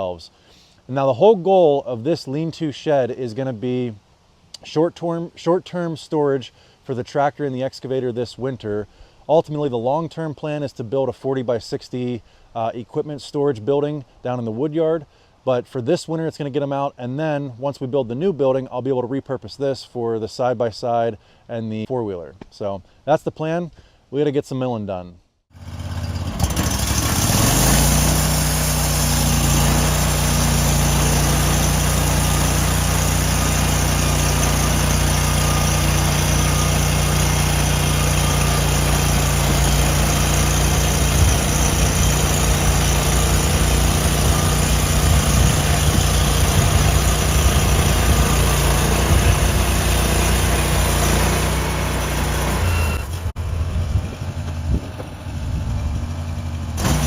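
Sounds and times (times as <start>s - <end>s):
engine running at high speed: 25.6s - 57.0s.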